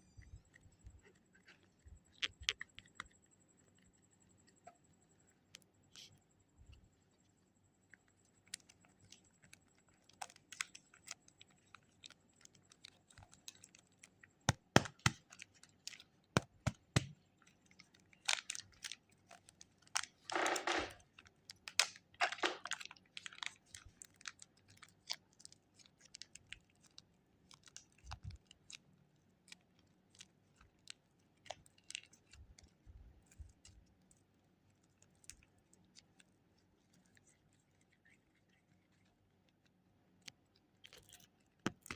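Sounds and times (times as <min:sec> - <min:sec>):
plastic wrapper crinkling and tearing: 0:08.0 - 0:41.9
sharp clicks and taps: 0:14.5 - 0:15.3.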